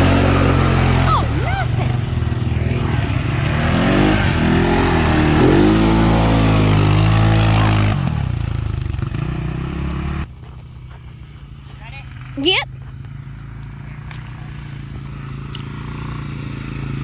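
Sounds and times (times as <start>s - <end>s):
atv engine revving: 0.0s - 17.0s.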